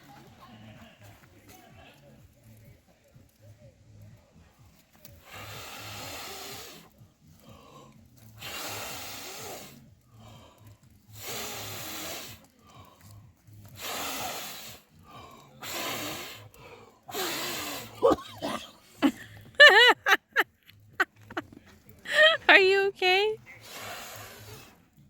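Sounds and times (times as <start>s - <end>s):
person blowing onto a fire: 5.1s - 6.9s, 8.4s - 10.3s, 11.1s - 12.5s, 13.6s - 15.0s, 15.6s - 18.6s, 23.6s - 24.9s.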